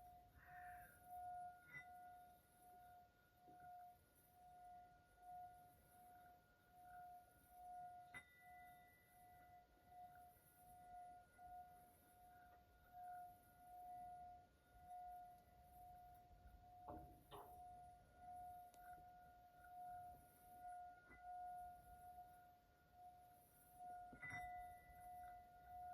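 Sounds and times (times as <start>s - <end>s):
singing bowl hum: 0.0s - 25.9s
singing bowl tap ringing: 8.0s - 8.8s, 16.8s - 17.9s, 24.0s - 25.4s.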